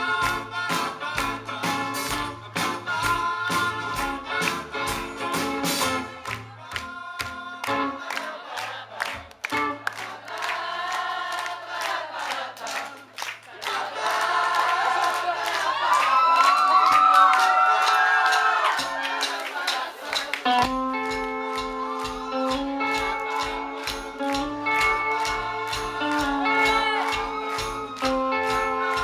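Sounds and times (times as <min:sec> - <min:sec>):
voices singing harmonies: 0:00.0 - 0:05.4, 0:06.2 - 0:16.1, 0:18.5 - 0:29.0
strummed guitar: 0:20.5 - 0:29.0.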